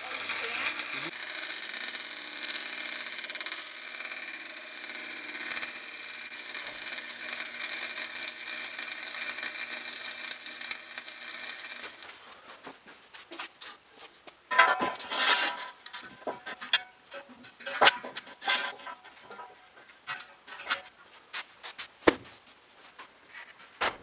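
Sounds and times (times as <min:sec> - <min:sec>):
welding arc crackling hiss: 0:00.0 - 0:12.2
wire feed buzz: 0:00.0 - 0:12.2.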